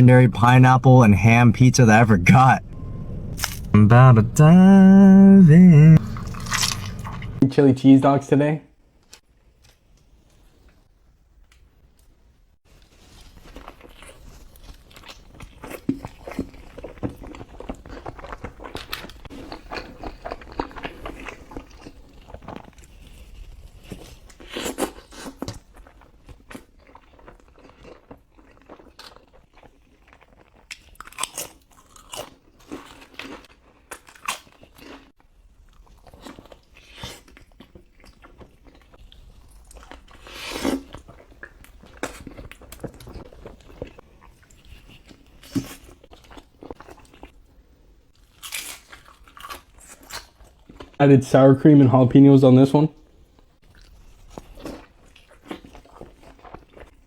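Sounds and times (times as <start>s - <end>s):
crunchy bites: 6.0s - 7.3s
wet chewing: 6.0s - 7.4s.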